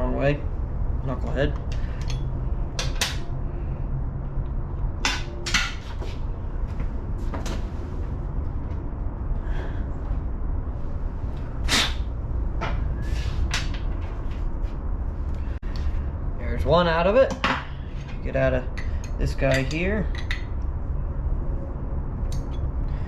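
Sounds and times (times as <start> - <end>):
steady low hum: 0.0 - 23.0
metal clicks of wrenches: 1.6 - 3.3.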